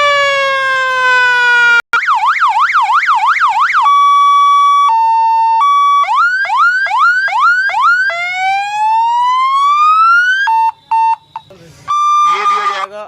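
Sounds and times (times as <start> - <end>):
rapid rising siren sweeps: 0.0 - 12.9
electronic siren wail: 0.0 - 13.0
siren yelp: 0.0 - 13.0
two-tone hi-lo siren: 0.0 - 13.0.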